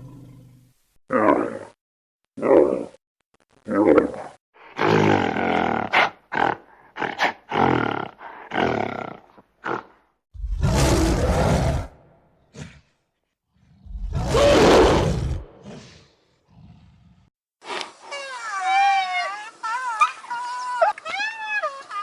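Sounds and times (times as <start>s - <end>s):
animal deep roars: 0.0s - 1.7s, 10.4s - 12.8s, 13.6s - 17.3s.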